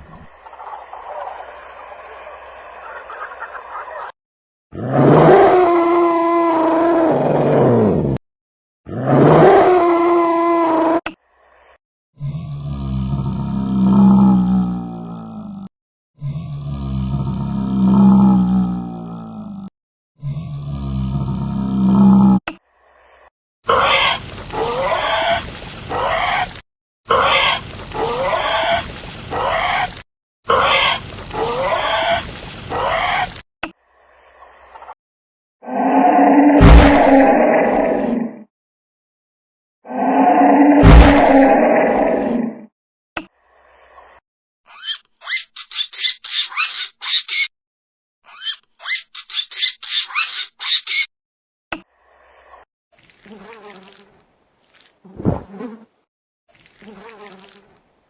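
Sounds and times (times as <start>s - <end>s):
low drawn-out animal call: 12.2s - 15.4s, 16.2s - 19.3s, 20.2s - 22.4s, 35.6s - 38.4s, 39.8s - 42.7s
rough animal calls: 23.7s - 33.4s, 35.6s - 38.1s, 39.8s - 42.3s.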